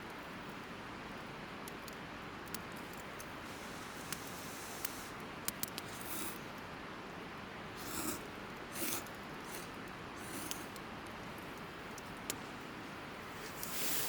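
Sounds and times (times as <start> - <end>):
fire hiss: 3.3 - 6.5, 7.8 - 10.8, 13.2 - 14.0
fire flaring with a rush: 3.4 - 6.4, 7.8 - 10.8, 13.3 - 14.0.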